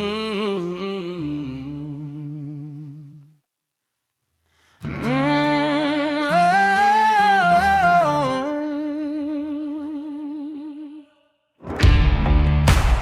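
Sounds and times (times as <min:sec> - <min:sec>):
person humming: 0:00.0 - 0:03.4, 0:04.8 - 0:11.3.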